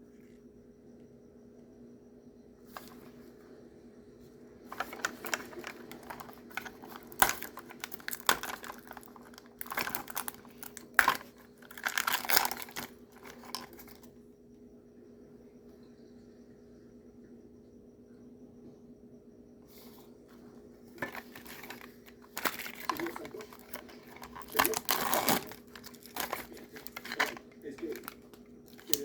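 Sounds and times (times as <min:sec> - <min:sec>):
plastic packaging crinkling: 0:02.7 - 0:03.1, 0:04.7 - 0:14.1, 0:21.0 - 0:29.0.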